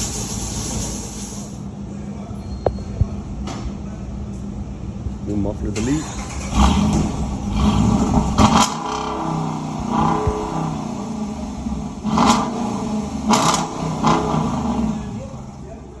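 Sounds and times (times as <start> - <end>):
car engine revving over idle: 5.8 - 16.0.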